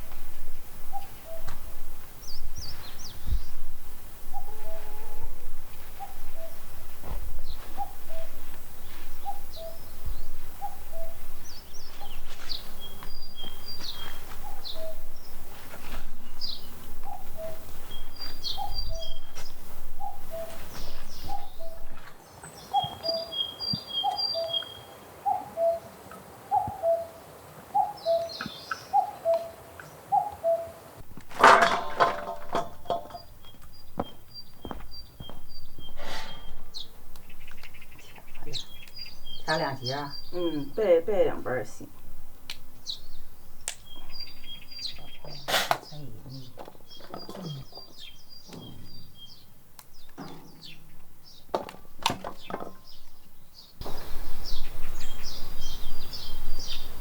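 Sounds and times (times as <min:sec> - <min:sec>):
birds chirping: 0:00.0 - 0:57.0
short loud clatter: 0:31.1 - 0:33.4.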